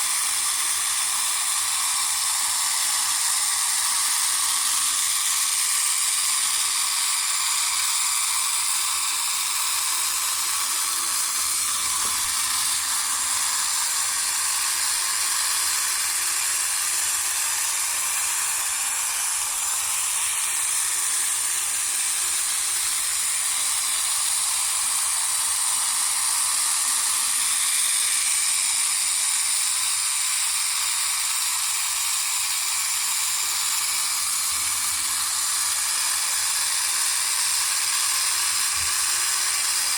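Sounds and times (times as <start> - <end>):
toy motor high whir: 0.0 - 39.9.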